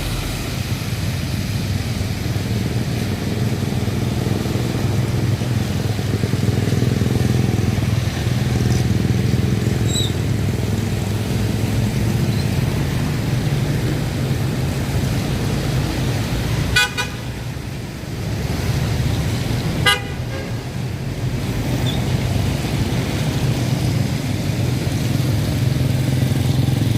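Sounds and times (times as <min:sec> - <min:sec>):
vehicle engine running: 0:00.0 - 0:16.4
road traffic: 0:00.0 - 0:26.9.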